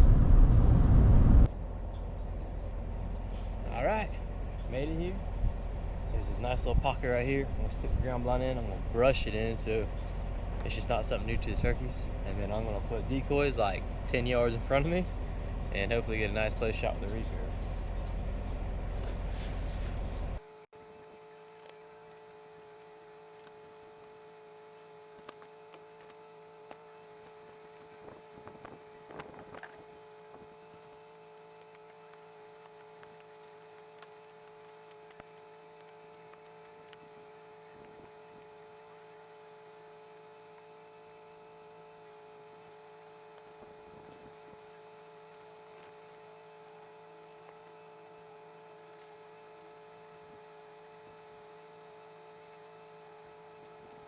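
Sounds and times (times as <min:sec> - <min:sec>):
faint steady hum: 0:00.0 - 0:54.0
rustling and clicking: 0:21.4 - 0:37.2.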